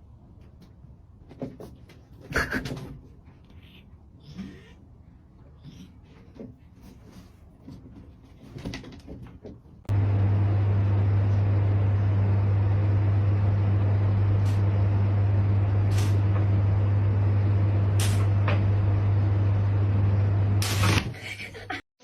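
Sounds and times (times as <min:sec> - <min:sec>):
loud steady low machine hum: 0:09.9 - 0:21.1.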